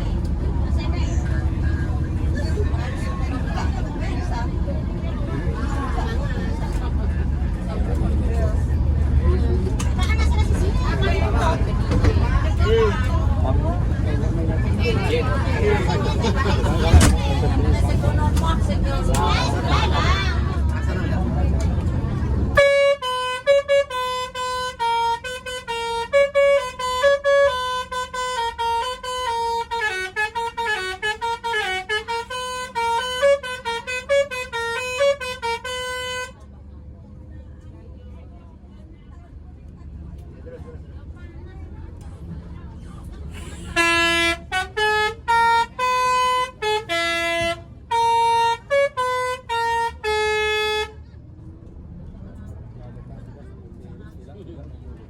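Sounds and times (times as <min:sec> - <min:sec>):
bus horn playing a tune: 0:22.6 - 0:36.5, 0:43.3 - 0:51.0.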